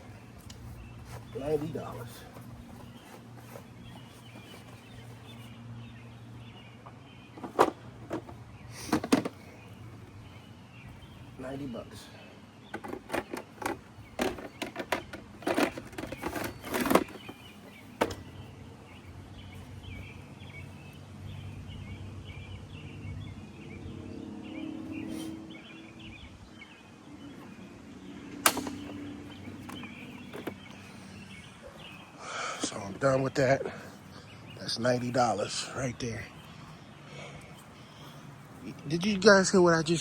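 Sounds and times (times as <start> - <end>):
small birds chirping: 0.0 - 40.0
sharp knocks and cracks: 28.4 - 30.8.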